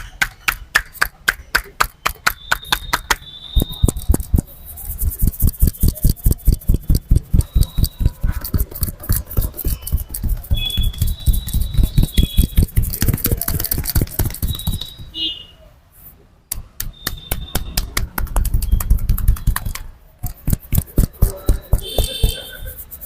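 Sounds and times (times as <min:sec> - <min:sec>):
hands thumping on head: 0:16.6 - 0:22.4.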